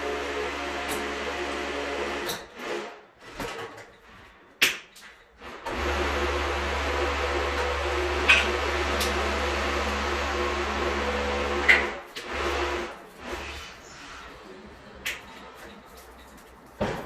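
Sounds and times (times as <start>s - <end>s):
electric motor humming: 5.7s - 13.7s.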